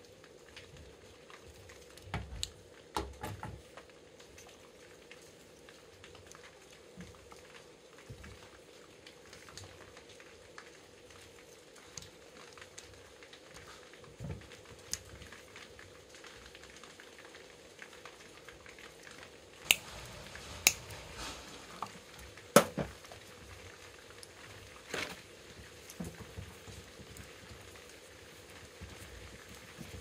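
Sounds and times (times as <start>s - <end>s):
hands rustling with wiring: 19.5s - 23.3s.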